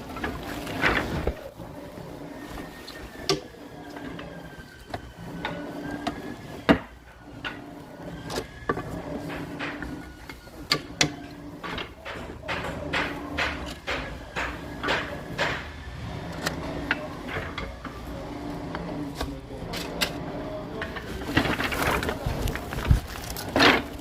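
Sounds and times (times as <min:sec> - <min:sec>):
knocks and clatter: 0:08.7 - 0:10.1, 0:10.7 - 0:15.9.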